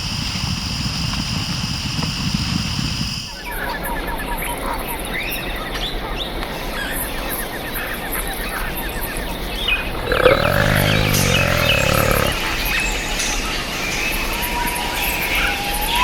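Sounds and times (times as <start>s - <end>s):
birds chirping: 9.5s - 12.6s
big cat growling: 9.8s - 12.7s.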